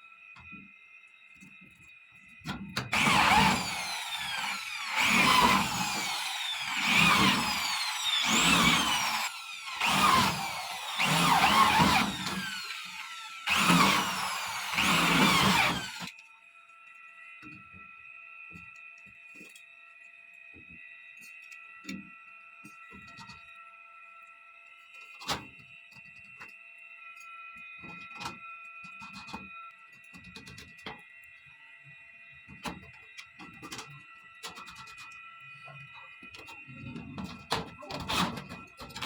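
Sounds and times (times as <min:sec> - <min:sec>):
small electric motor surging: 0:02.9 - 0:16.1.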